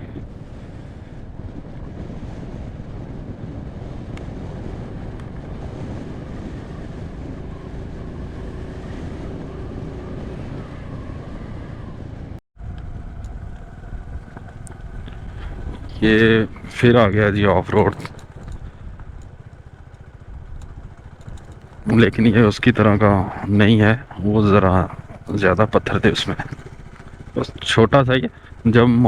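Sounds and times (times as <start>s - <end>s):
motorcycle engine rumble: 0.0s - 29.0s
wind buffeting microphone: 0.0s - 29.0s.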